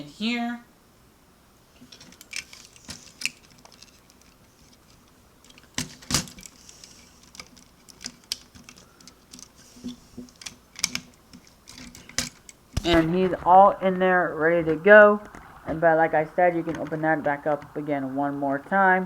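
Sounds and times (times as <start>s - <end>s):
plastic toy pieces clicking: 10.2s - 12.6s.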